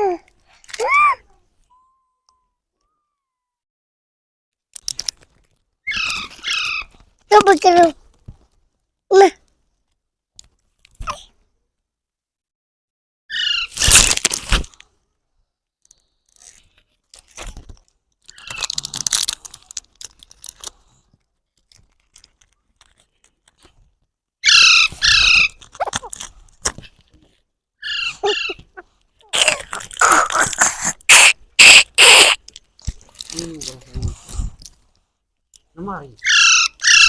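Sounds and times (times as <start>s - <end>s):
sharp clicks and crunches: 4.7s - 8.6s, 13.7s - 14.9s, 15.8s - 24.1s, 25.0s - 27.4s, 28.5s - 35.7s
baby parrot squawking: 5.9s - 6.9s, 13.3s - 13.7s, 24.4s - 25.6s, 27.8s - 28.8s, 29.4s - 32.4s, 36.2s - 37.0s.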